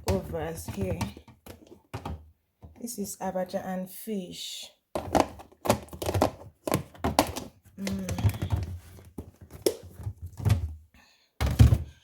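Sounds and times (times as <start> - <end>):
plastic containers clattering: 0.0 - 2.8, 5.0 - 10.8, 11.4 - 12.0.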